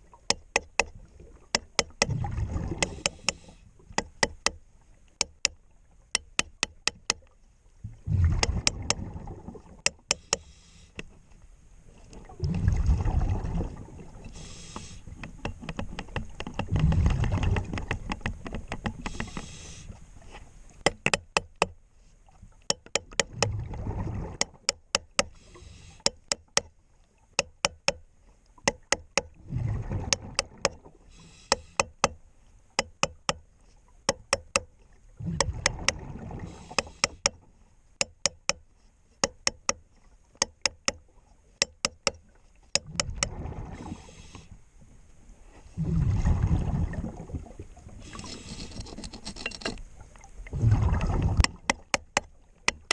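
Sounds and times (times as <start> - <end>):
regulator bubbles rumbling underwater: 0.0 - 6.9, 7.7 - 10.0, 11.8 - 20.8, 22.3 - 27.4, 28.6 - 32.0, 33.9 - 37.5, 40.6 - 48.6, 49.8 - 52.9
sharp clicking taps: 20.8 - 21.8, 39.2 - 39.8.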